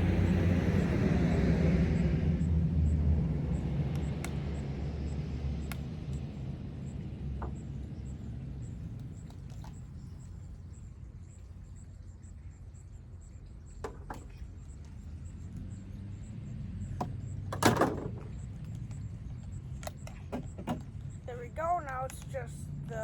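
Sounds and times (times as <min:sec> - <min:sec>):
steady low rumble: 0:00.0 - 0:23.0.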